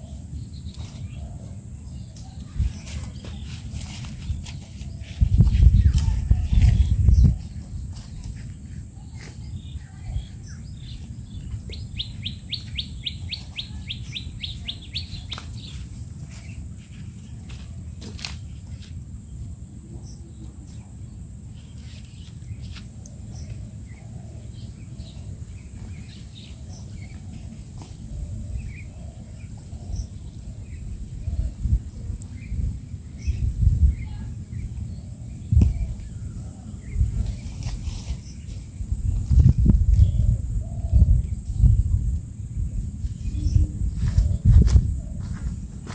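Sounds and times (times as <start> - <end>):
birds chirping and calling: 0.0 - 16.6, 21.8 - 42.1.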